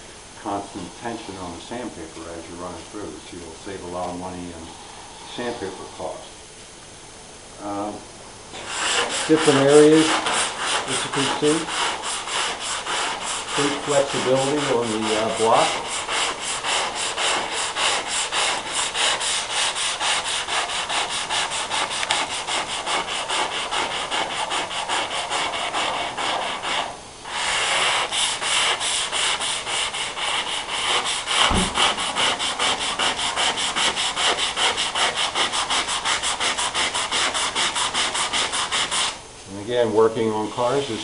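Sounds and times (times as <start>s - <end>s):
sandpaper rubbing on metal panel: 8.6s - 39.2s.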